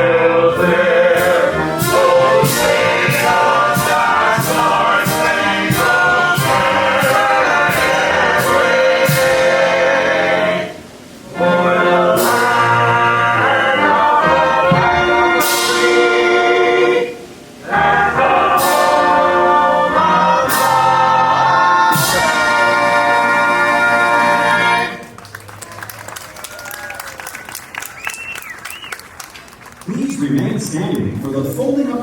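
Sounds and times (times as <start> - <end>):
brass band accompanying: 0.0 - 25.2
choir singing held chords: 0.0 - 25.2.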